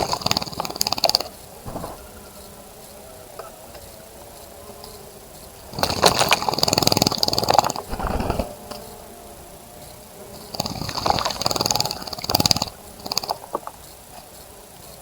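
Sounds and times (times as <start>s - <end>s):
bird splashing water: 7.9s - 8.6s.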